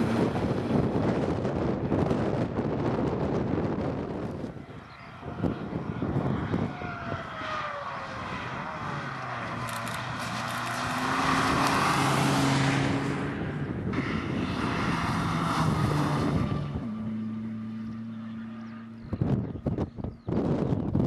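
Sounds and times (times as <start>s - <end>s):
road noise: 0.0s - 21.0s
wind noise: 0.0s - 21.0s
car engine revving: 5.3s - 19.9s.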